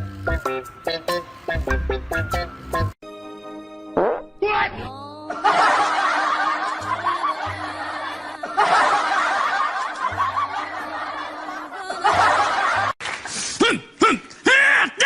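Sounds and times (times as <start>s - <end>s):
background music with bass: 0.0s - 3.0s
canned laughter: 5.3s - 13.0s.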